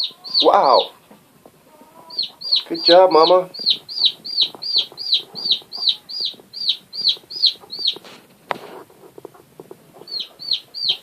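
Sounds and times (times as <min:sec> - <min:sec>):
chick peeping: 0:00.0 - 0:11.0
hen clucking softly: 0:01.6 - 0:08.0, 0:09.3 - 0:11.0.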